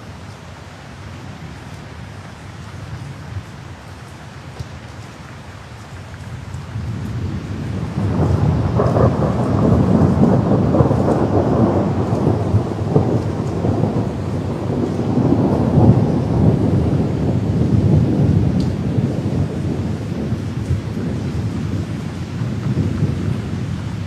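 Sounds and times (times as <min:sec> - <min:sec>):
steady rain: 0:00.0 - 0:24.0
rolling thunder: 0:06.7 - 0:24.0.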